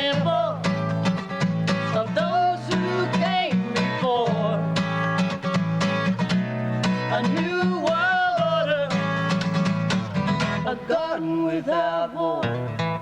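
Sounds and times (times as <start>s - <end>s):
strummed acoustic guitar: 0.0s - 13.0s
person singing: 1.9s - 4.8s, 7.0s - 9.3s, 10.6s - 12.8s.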